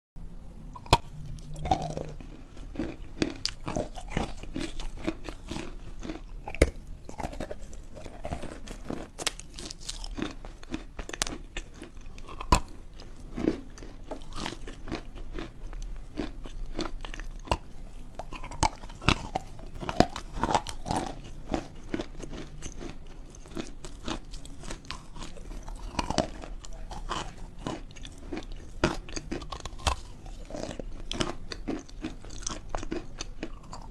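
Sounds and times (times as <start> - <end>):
chewing chalk crunches: 0.7 - 33.9.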